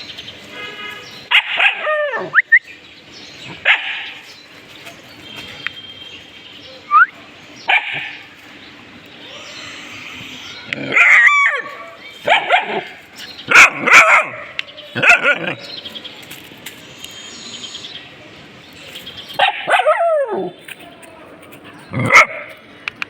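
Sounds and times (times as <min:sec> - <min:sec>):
dog barking: 0:01.3 - 0:02.4, 0:03.6 - 0:04.2, 0:07.2 - 0:08.2, 0:10.9 - 0:15.6, 0:19.4 - 0:20.5, 0:22.0 - 0:22.6.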